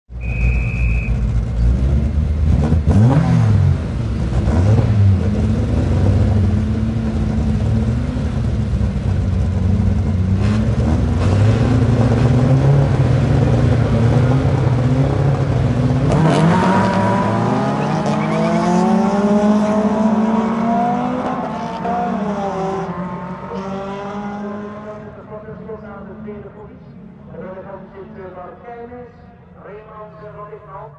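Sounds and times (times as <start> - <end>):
short high beep: 0.2 - 1.3
rally car engines revving: 0.2 - 28.6
cars accelerating away: 1.1 - 27.4.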